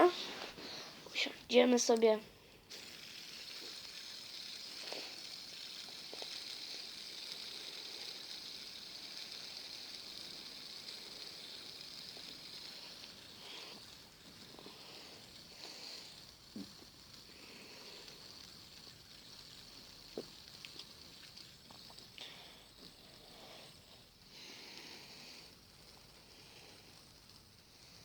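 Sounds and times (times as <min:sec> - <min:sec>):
fidget spinner bearing whirring: 0:00.0 - 0:28.0.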